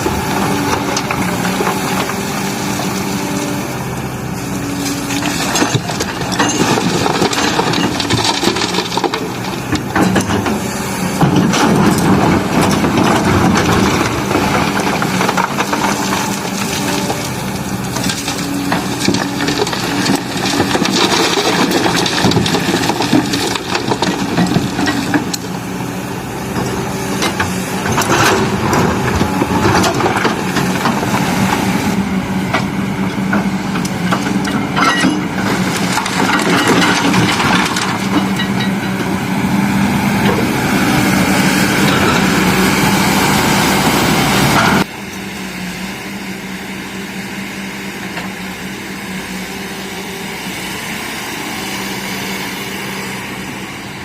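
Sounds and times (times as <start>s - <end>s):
heavy diesel engines running: 0.0s - 54.0s
stones clattering into truck bed: 5.3s - 10.4s.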